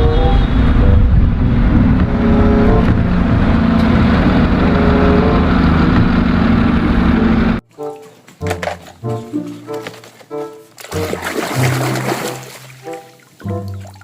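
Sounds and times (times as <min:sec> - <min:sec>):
engine deep rumble: 0:00.0 - 0:07.6.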